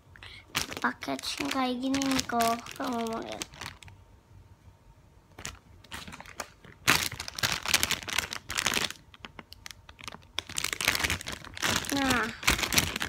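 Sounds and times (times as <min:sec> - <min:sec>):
plastic packaging crinkling: 0:00.2 - 0:04.0, 0:05.3 - 0:13.0.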